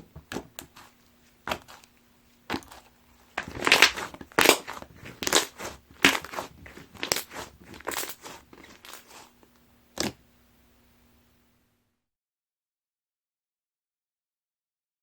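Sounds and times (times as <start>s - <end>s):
slime squishing by hand: 0.0s - 10.2s.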